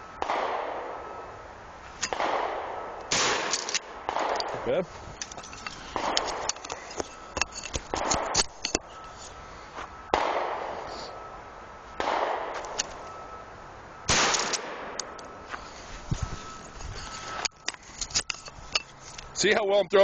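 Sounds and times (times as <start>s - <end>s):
shotgun shots echoing: 2.1s - 4.8s, 10.1s - 10.9s, 12.0s - 12.7s, 14.1s - 15.2s.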